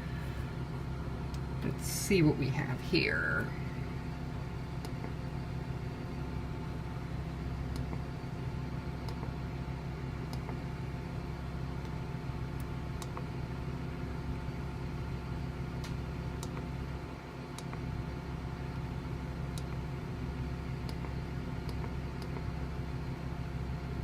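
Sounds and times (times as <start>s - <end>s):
bus engine idling: 0.0s - 12.5s.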